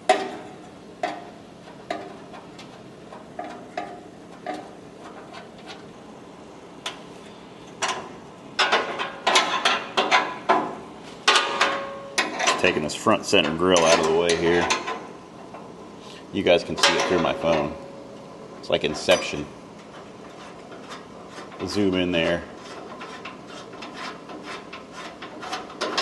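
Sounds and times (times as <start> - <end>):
tools and metal parts clanking: 7.7 - 15.1, 16.6 - 17.9, 18.7 - 20.1, 20.7 - 26.0.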